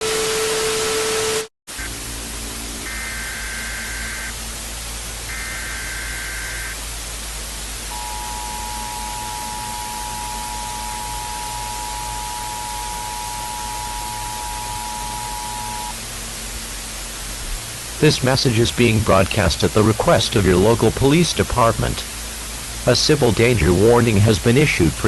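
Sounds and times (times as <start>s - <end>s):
static hiss: 0.0s - 25.0s
warbling data bursts: 2.8s - 4.4s, 5.3s - 6.8s, 7.9s - 16.0s
two-tone attention signal: 7.9s - 16.0s.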